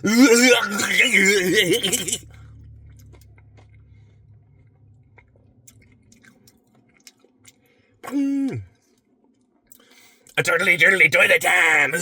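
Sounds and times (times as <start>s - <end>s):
chewing with crunchy clicks: 2.2s - 7.9s, 8.7s - 10.4s.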